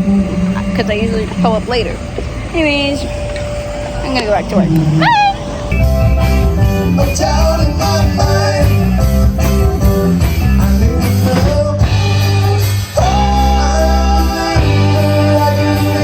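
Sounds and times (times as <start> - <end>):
song with singing guitar and drums: 4.9 - 16.0.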